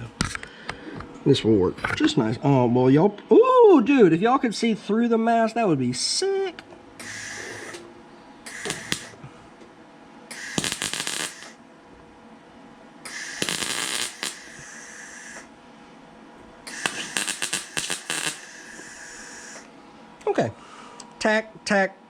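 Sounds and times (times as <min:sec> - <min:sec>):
welding crackle: 0:08.5 - 0:09.2, 0:10.3 - 0:11.6, 0:13.1 - 0:15.4, 0:16.7 - 0:19.6.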